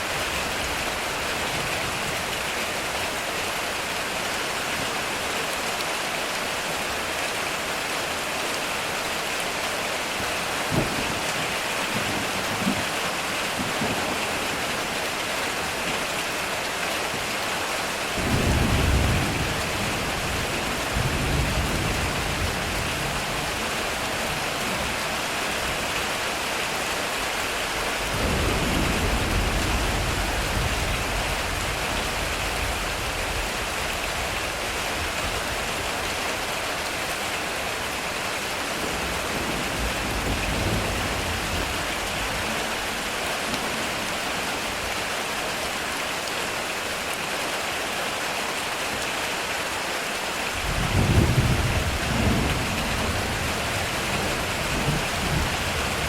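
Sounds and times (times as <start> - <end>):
heavy rain on metal roof: 0.0 - 56.0
thunder rumbling: 28.0 - 35.9, 38.8 - 44.2, 50.6 - 56.0.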